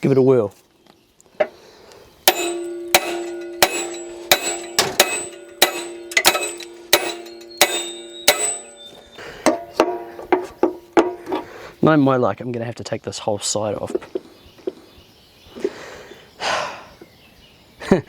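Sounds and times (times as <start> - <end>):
hammer striking ringing metal: 2.2 - 11.2.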